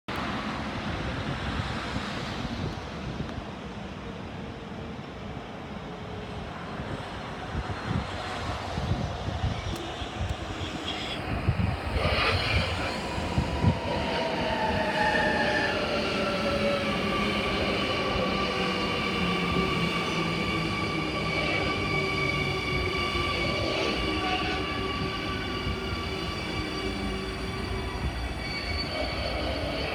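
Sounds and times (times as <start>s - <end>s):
high squealing tones: 10.8s - 29.9s.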